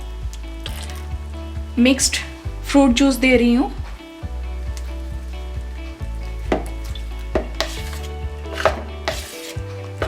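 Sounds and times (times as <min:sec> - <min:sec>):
background music: 0:00.0 - 0:10.0
utensil scraping a bowl: 0:07.6 - 0:09.6.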